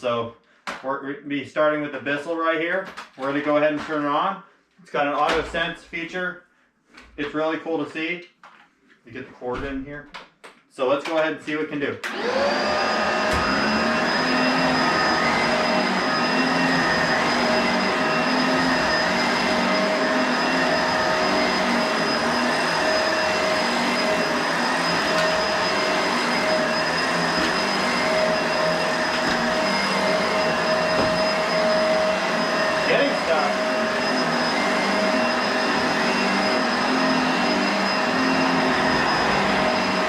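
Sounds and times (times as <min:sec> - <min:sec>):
vacuum cleaner motor whining: 0:12.1 - 0:40.0.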